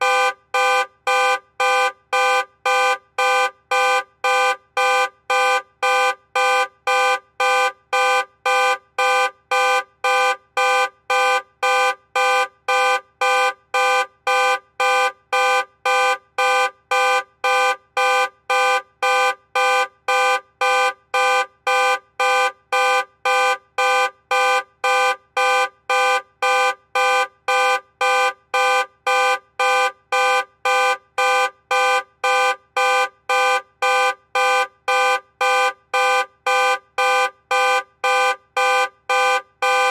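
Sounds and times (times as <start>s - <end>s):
car alarm pulsing: 0.0s - 39.9s.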